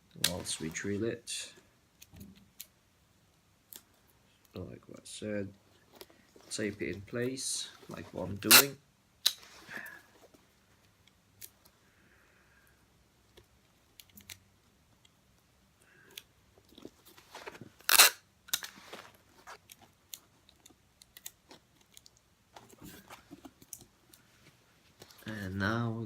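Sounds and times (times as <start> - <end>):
tape tearing: 8.4 - 9.5, 17.0 - 20.2.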